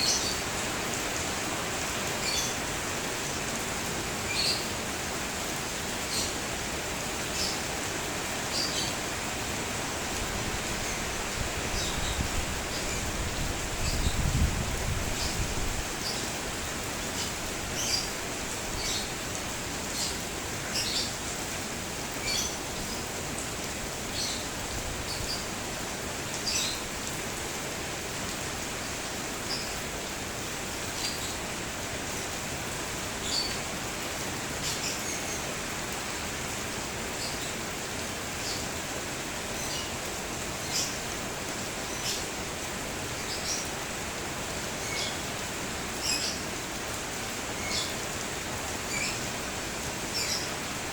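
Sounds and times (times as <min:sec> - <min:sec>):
steady rain falling: 0:00.0 - 0:50.9
small birds chirping: 0:17.0 - 0:18.2, 0:40.6 - 0:41.0, 0:44.8 - 0:45.4, 0:46.0 - 0:46.6, 0:47.5 - 0:50.8.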